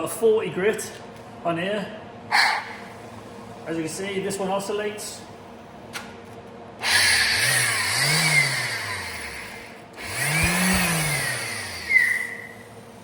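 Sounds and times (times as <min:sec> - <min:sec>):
orbital sander on metal: 0:10.1 - 0:12.1.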